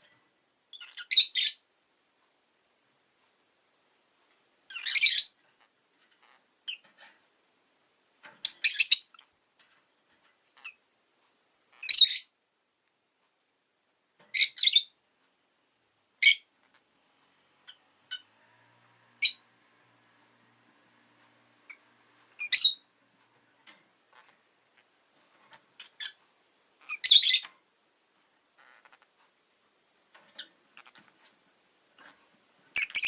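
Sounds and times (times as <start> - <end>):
lovebirds chirping: 0.7 - 1.7, 4.6 - 6.9, 8.3 - 9.4, 10.4 - 10.9, 11.6 - 12.4, 14.3 - 15.0, 16.2 - 16.9, 17.6 - 18.4, 19.1 - 19.5, 21.4 - 27.6, 28.5 - 29.2, 32.0 - 33.0.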